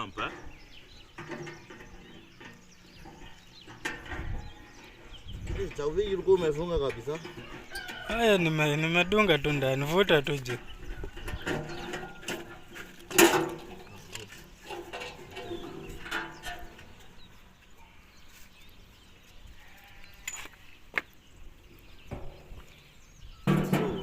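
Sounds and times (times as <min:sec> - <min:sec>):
animal bleating: 0:19.5 - 0:20.8.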